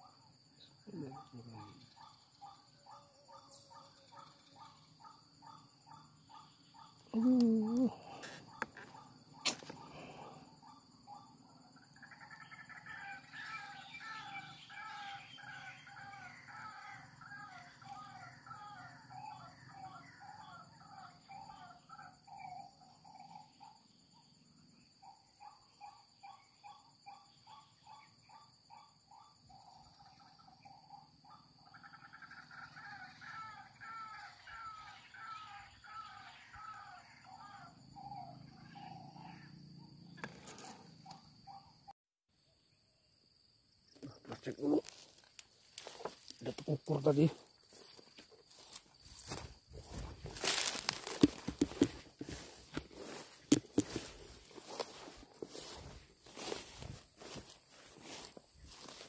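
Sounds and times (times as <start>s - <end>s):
high-pitched insect whine: 0.0s - 41.9s, 43.2s - 59.0s
bird harsh repeated calls: 1.0s - 11.4s, 25.0s - 41.8s, 45.8s - 59.0s.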